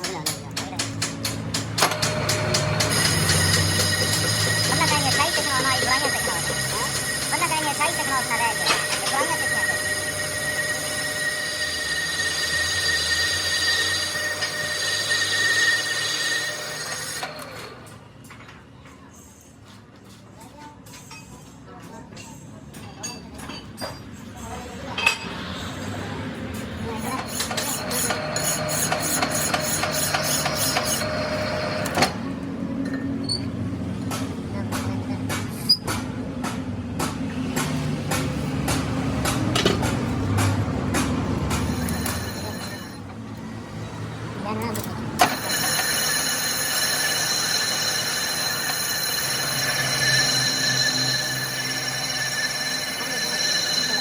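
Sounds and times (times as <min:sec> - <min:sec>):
steady machine hum: 0:00.1 - 0:15.5
high-pitched metal squeal: 0:02.0 - 0:17.1, 0:26.9 - 0:32.1
sharp knocks on metal: 0:34.1 - 0:41.7.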